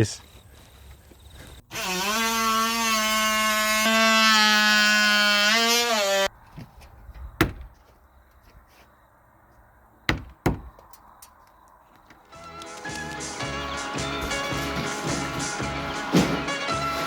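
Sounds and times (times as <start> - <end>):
sharp knocks: 7.4 - 7.8, 10.1 - 11.3.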